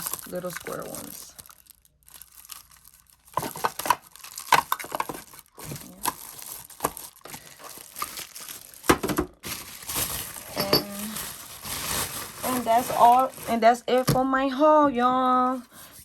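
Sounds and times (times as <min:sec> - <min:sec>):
packaging crinkling and rustling: 0:00.0 - 0:14.2.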